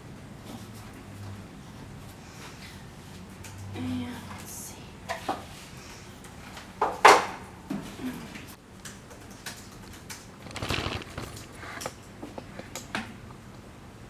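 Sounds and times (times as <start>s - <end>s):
plastic knocks and clatter: 9.9s - 12.5s
scraping rustle: 10.2s - 12.0s.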